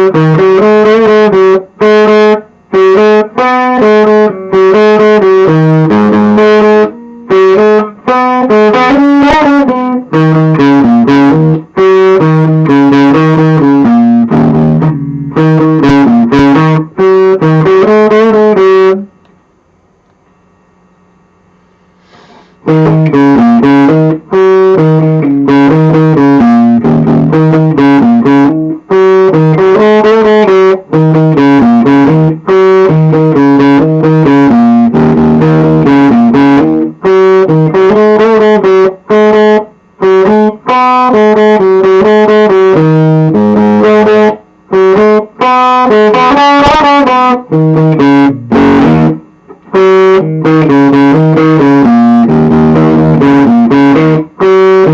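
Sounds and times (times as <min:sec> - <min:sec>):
overdriven electric guitar strumming: 0:00.0 - 0:19.3, 0:22.0 - 0:54.9.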